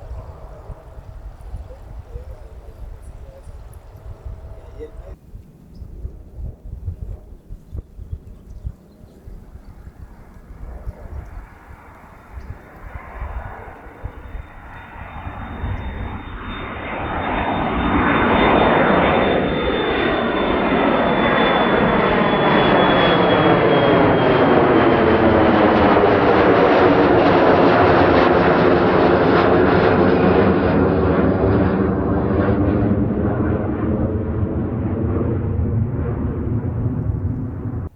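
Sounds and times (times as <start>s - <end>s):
jet aircraft engine rumble: 0.0s - 37.9s
high engine whine: 11.9s - 37.9s.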